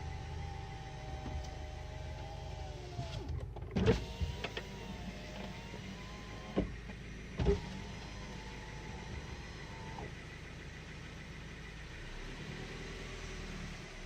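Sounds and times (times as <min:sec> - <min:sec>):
car engine running with whine: 0:00.0 - 0:14.0.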